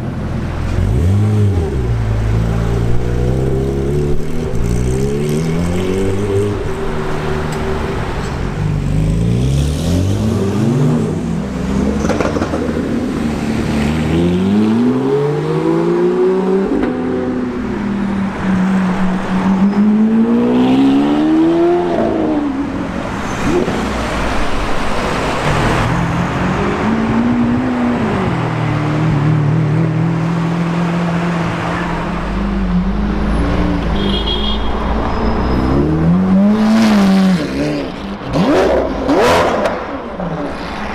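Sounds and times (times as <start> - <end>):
sports car engine revving: 35.7 - 39.9.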